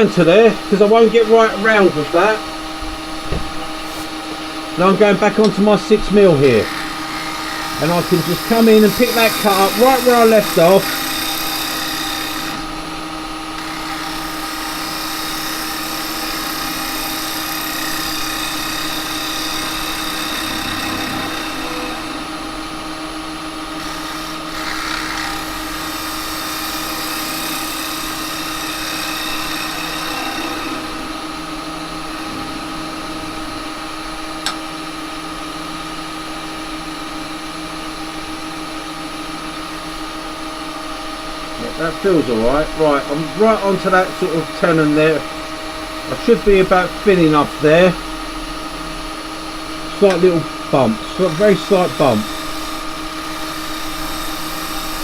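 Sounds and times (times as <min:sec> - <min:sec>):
lathe motor whine: 0:00.0 - 0:55.0
hiss of cutter in wood: 0:01.6 - 0:12.9, 0:13.5 - 0:34.5, 0:41.6 - 0:45.3, 0:49.8 - 0:55.0.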